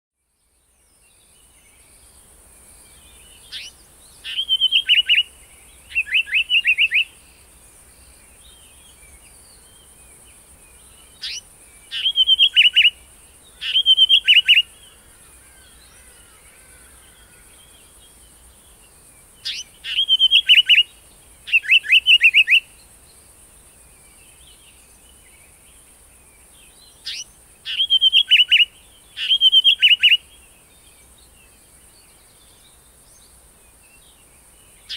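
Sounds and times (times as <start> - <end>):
bird calling with rasping notes: 3.4 - 5.3, 10.8 - 17.9, 19.4 - 22.7, 27.0 - 30.3.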